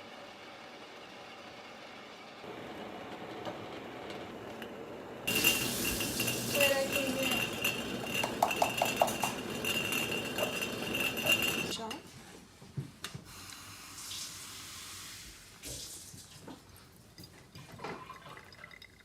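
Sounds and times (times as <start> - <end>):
dishes and glass clinking: 5.3 - 12.0.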